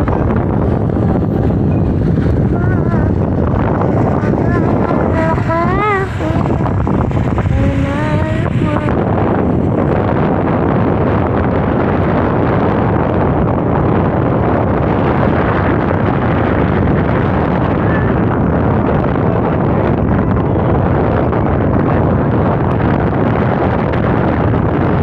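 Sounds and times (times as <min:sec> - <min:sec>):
person speaking: 0:00.0 - 0:06.8, 0:07.5 - 0:09.1
wind buffeting microphone: 0:00.0 - 0:25.0.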